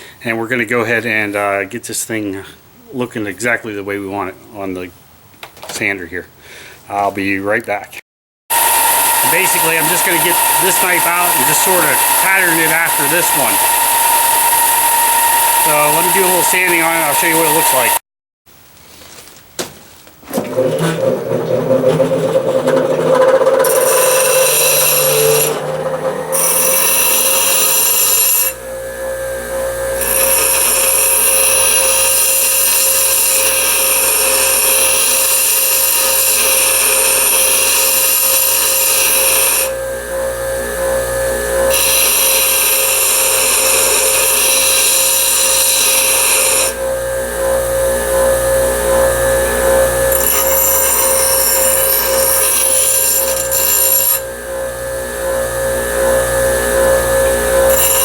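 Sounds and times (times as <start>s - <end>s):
belt sander motor whine: 8.5s - 18.0s, 20.3s - 58.0s
steel blade grinding on belt: 8.5s - 18.0s, 20.4s - 28.8s, 29.5s - 58.0s.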